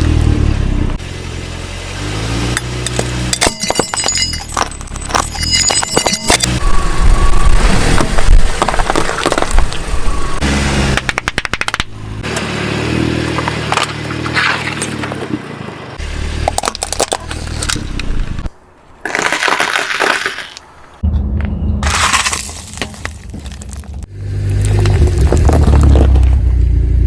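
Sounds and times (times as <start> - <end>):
objects crunching under car tyres: 2.6 - 6.6, 7.2 - 11.3, 13.3 - 15.5, 16.2 - 21.0, 21.8 - 26.8.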